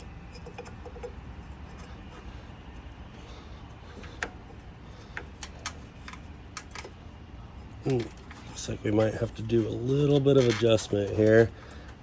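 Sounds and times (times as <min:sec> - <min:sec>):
steady low hum: 0:00.0 - 0:12.0
light clicks and taps of parts: 0:04.0 - 0:07.0.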